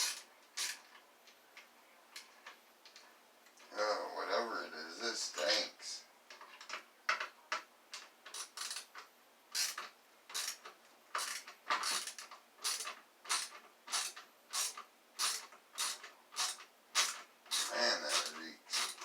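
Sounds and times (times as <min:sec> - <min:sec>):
ratcheting screwdriver clicking: 0:00.0 - 0:00.9, 0:08.3 - 0:09.0, 0:09.6 - 0:19.0.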